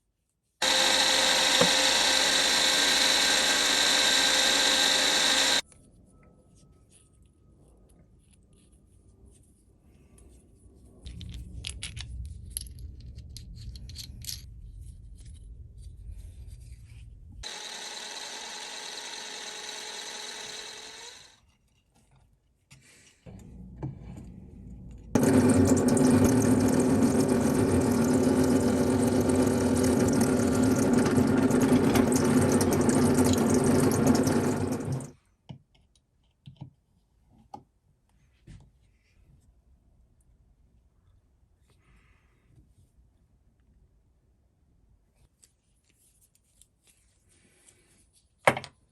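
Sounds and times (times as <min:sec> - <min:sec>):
loud machine running: 0:00.6 - 0:05.6, 0:17.4 - 0:21.3, 0:25.1 - 0:35.1
power tool low hum: 0:00.6 - 0:05.6, 0:17.4 - 0:21.4, 0:23.3 - 0:35.2.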